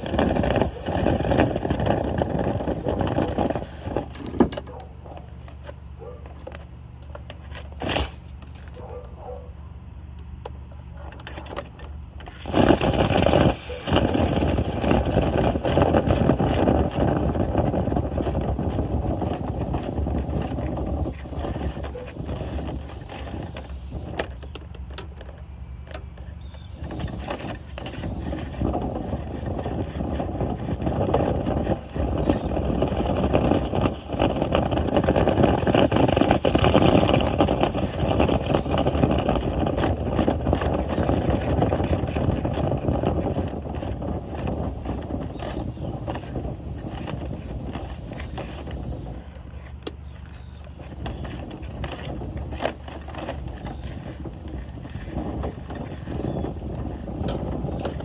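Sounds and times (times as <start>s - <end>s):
motor-driven machine with rushing air: 0.0s - 4.6s, 7.7s - 8.4s, 12.2s - 24.6s, 26.7s - 49.8s.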